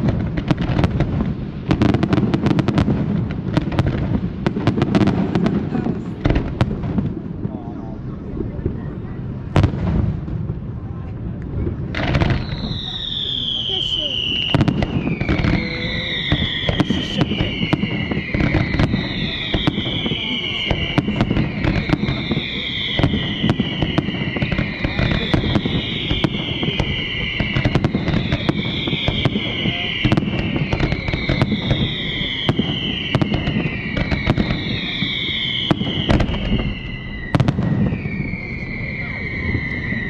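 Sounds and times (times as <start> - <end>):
fireworks bangs and crackles: 0.0 - 40.0.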